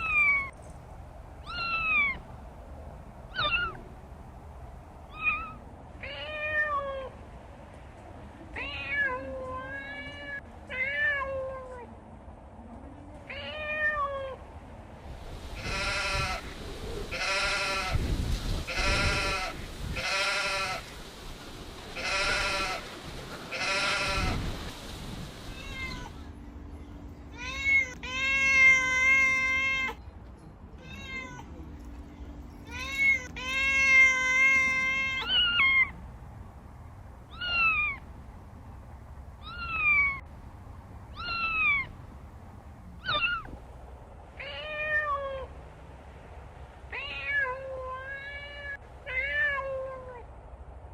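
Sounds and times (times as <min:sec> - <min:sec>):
kittens meowing: 0:00.0 - 0:00.5, 0:01.4 - 0:02.3, 0:03.3 - 0:03.9, 0:05.1 - 0:07.1, 0:27.3 - 0:30.0, 0:32.6 - 0:36.0, 0:37.3 - 0:38.0, 0:39.4 - 0:40.3, 0:41.1 - 0:42.0, 0:43.0 - 0:43.6.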